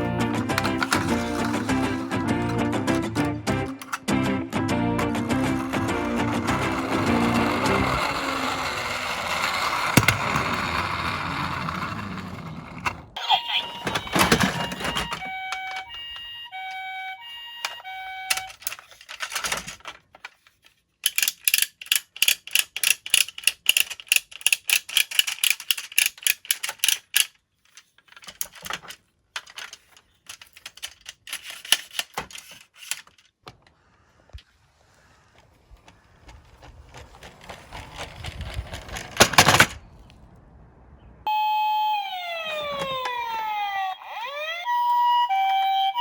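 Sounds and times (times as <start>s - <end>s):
plastic toy cars rattling: 0.0s - 4.1s, 5.0s - 16.8s, 17.6s - 33.8s, 36.2s - 39.9s
toy two-tone siren: 5.6s - 9.6s, 13.2s - 19.2s, 41.3s - 46.0s.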